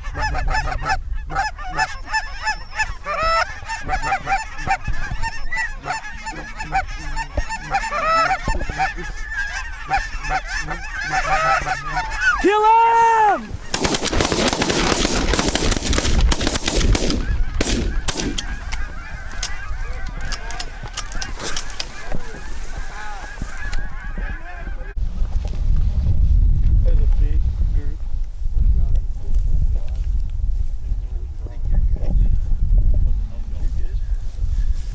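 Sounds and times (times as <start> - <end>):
geese honking: 0.0 - 25.0
shotgun fire: 13.7 - 18.5.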